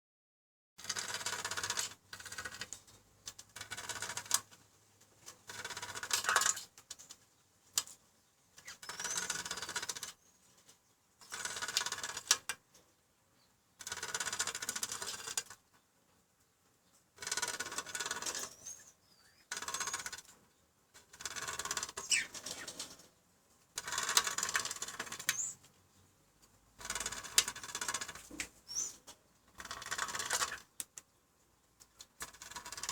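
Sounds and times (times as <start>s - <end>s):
short high bird whistles: 28.7s - 29.0s.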